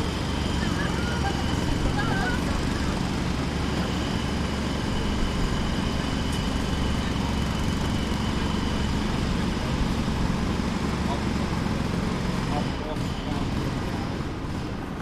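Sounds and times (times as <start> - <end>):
distant jackhammer rattling: 0.0 - 15.0.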